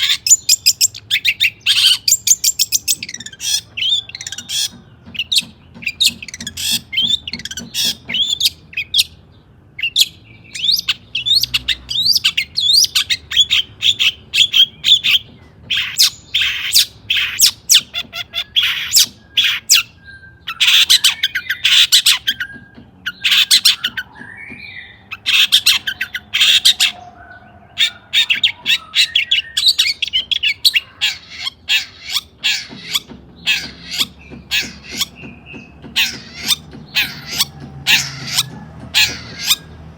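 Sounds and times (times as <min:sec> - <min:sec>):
bird harsh chattering song: 0:00.0 - 0:39.9.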